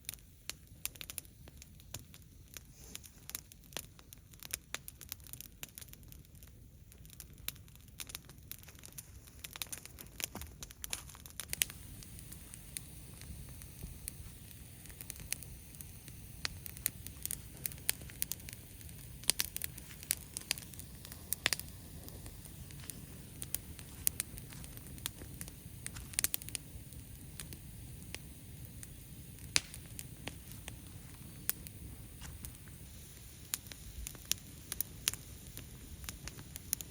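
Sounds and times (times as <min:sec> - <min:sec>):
bonfire crackling and popping: 0:00.0 - 0:36.9.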